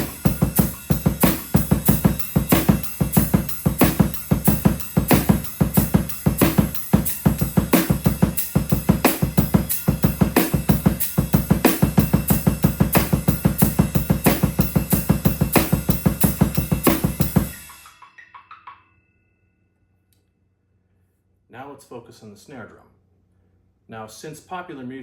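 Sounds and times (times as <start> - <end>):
drum kit playing rock beat: 0.0 - 18.6
cymbals ringing: 0.0 - 19.4
metronome clicking: 17.6 - 18.8.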